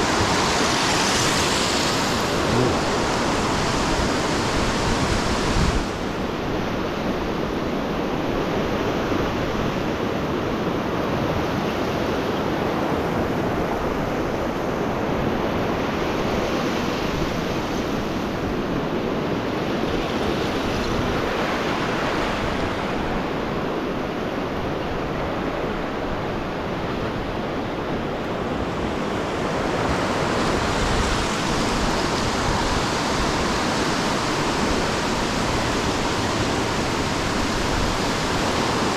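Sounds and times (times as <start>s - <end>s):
surf rushing: 0.0s - 9.4s, 25.4s - 38.9s
wind: 0.0s - 38.9s.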